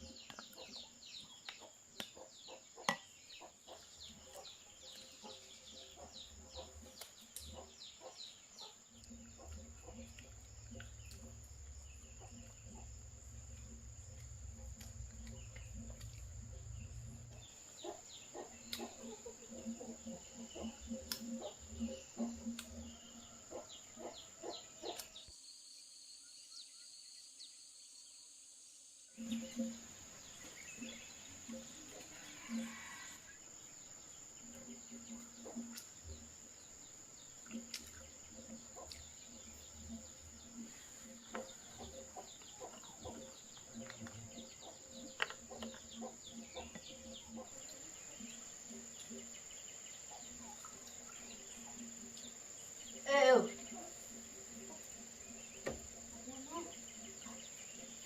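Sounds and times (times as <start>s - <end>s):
insects trilling: 0.0s - 58.0s.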